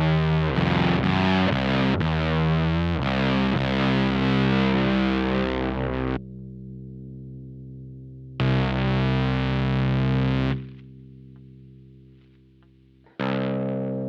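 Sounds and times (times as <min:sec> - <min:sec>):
distorted electric guitar riff: 0:00.0 - 0:06.2, 0:08.4 - 0:10.8, 0:13.2 - 0:14.0
low guitar drone: 0:00.0 - 0:12.1, 0:13.2 - 0:14.0.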